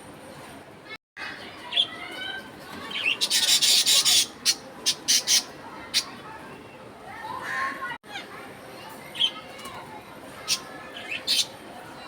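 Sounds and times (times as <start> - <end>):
bird screeching and squawking: 3.0 - 5.5.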